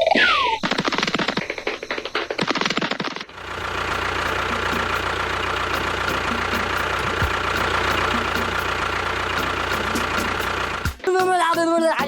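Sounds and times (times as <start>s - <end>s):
small motor rattling and whining: 3.3s - 11.0s.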